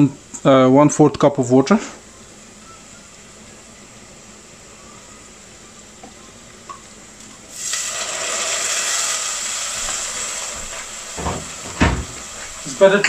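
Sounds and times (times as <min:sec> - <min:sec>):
oil sizzling loudly: 0:02.9 - 0:13.0.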